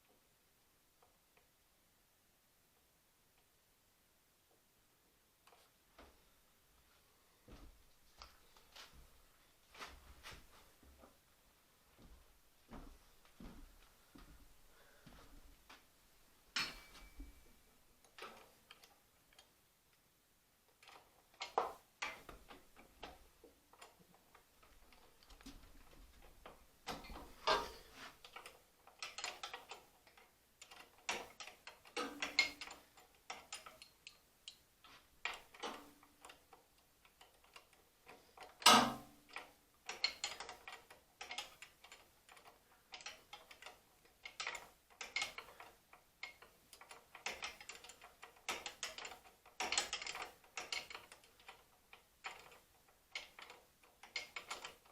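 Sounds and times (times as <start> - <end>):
hand tools clicking on metal: 20.8 - 34.6, 35.2 - 54.9.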